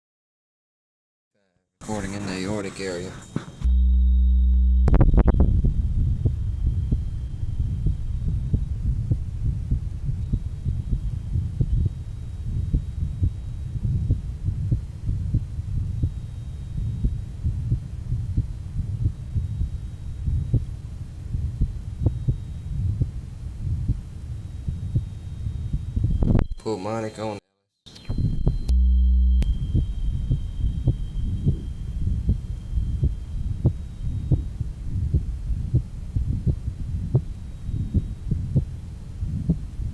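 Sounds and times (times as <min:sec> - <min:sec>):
heartbeat thuds: 0:01.8 - 0:26.6, 0:28.1 - 0:39.9
steady low hum: 0:01.8 - 0:26.7, 0:27.9 - 0:39.9
sharp click: 0:27.9 - 0:28.8.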